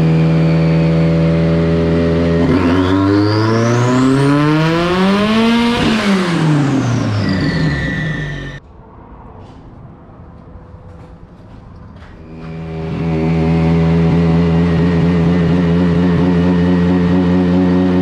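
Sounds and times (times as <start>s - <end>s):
drag car engine revving: 0.0s - 8.6s, 11.5s - 18.0s
high whine: 0.0s - 18.0s.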